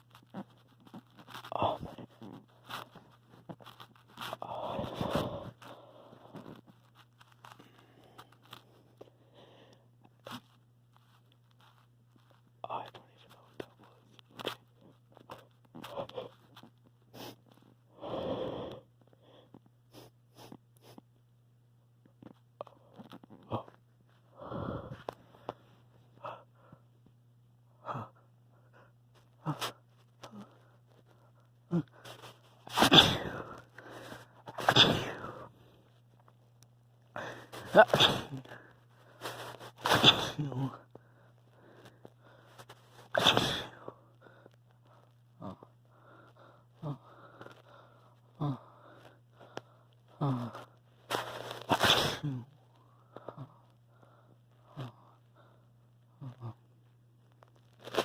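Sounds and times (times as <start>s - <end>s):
person sniffing and breathing sharply: 0.3s - 6.6s, 17.1s - 21.0s, 37.2s - 40.5s
person sneezing: 32.7s - 33.6s, 34.5s - 35.4s, 37.2s - 38.6s, 39.8s - 40.8s, 43.1s - 43.8s, 51.1s - 52.5s.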